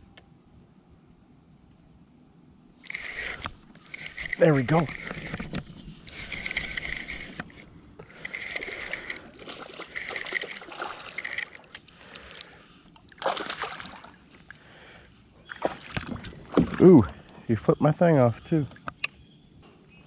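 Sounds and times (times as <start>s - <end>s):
fishing reel cranking: 2.8s - 11.8s
water splash: 9.4s - 11.2s, 13.1s - 14.2s, 15.5s - 17.1s.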